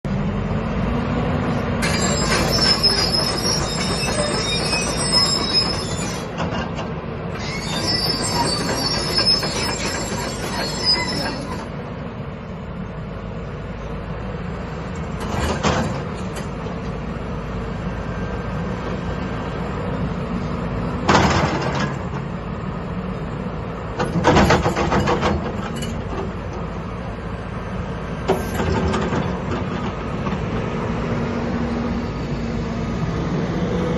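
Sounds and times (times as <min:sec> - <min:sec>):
excavator diesel engine running: 0:00.1 - 0:33.9
high metallic squeal: 0:01.8 - 0:06.4, 0:07.4 - 0:11.7.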